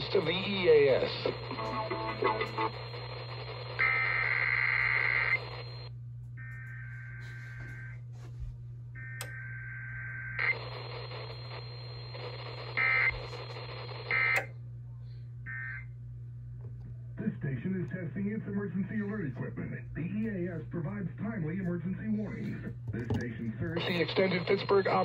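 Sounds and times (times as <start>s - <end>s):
radio hiss: 0.0s - 5.9s, 10.4s - 14.5s, 17.2s - 25.0s.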